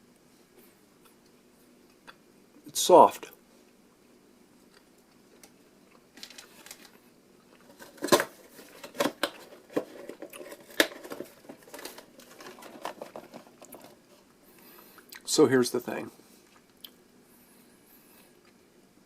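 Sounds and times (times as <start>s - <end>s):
plastic wrapper crinkling: 6.1s - 7.0s, 7.6s - 14.1s.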